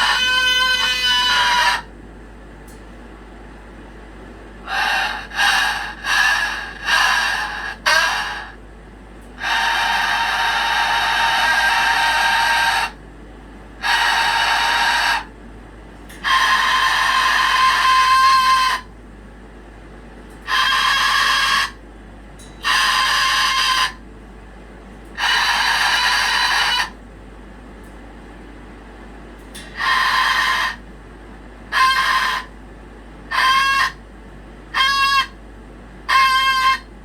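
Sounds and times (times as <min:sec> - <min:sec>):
pet animal high-pitched calls: 0:00.0 - 0:01.9, 0:04.7 - 0:08.6, 0:09.4 - 0:13.0, 0:13.8 - 0:15.3, 0:16.1 - 0:18.9, 0:20.4 - 0:21.8, 0:22.6 - 0:24.0, 0:25.2 - 0:27.0, 0:29.6 - 0:30.8, 0:31.7 - 0:32.6, 0:33.3 - 0:34.0, 0:34.7 - 0:35.4, 0:36.1 - 0:36.9.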